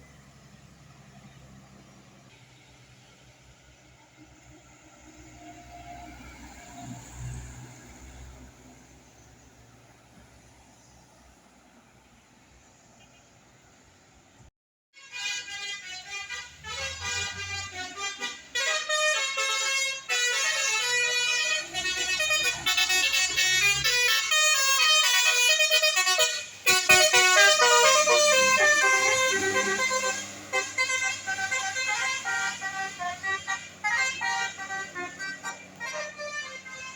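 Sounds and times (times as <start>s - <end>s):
musical air horns playing tune: 15.0s - 36.9s.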